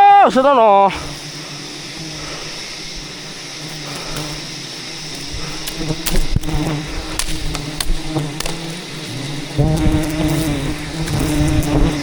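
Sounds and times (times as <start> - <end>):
bees buzzing: 0.0 - 12.0
sharp clicks and knocks: 5.6 - 8.6.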